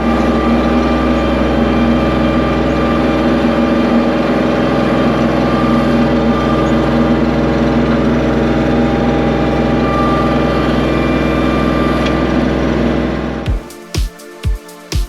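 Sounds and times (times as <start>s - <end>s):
engine running steadily: 0.0s - 13.5s
music with thumping beat: 13.5s - 15.0s.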